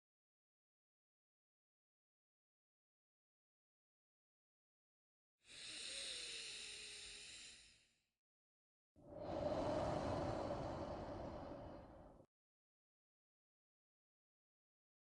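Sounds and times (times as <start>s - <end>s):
person breathing deeply: 5.5s - 7.6s, 9.0s - 12.3s.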